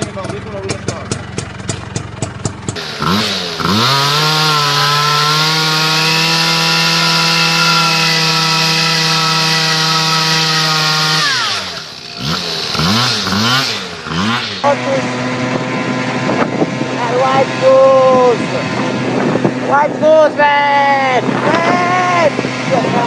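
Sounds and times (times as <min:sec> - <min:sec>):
two-stroke motorbike engine revving: 0:00.0 - 0:23.0.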